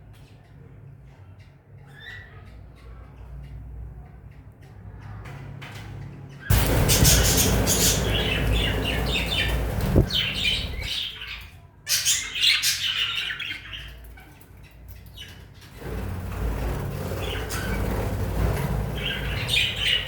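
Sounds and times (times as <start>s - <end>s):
loud low rumble: 6.5s - 11.0s, 15.8s - 20.0s
birds squawking and chirping: 6.5s - 20.0s.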